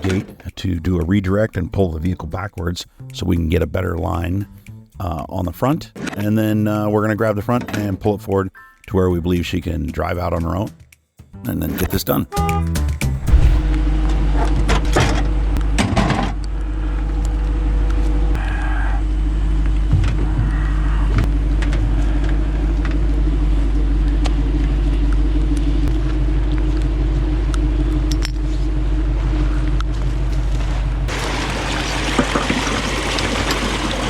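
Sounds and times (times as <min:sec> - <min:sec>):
vehicle engine idling: 0:13.2 - 0:34.0.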